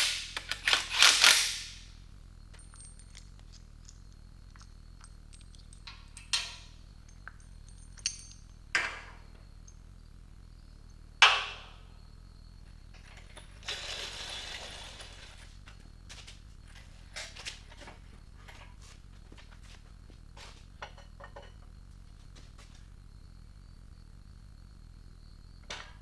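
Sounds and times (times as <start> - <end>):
metal tools clinking: 0.0 - 1.8, 2.5 - 9.0
metal clank: 5.0 - 9.8
rattling scrape: 13.0 - 15.6.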